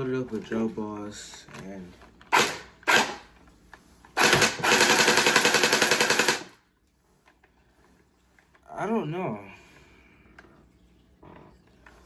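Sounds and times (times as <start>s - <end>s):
gel blaster firing full-auto: 4.2s - 6.5s.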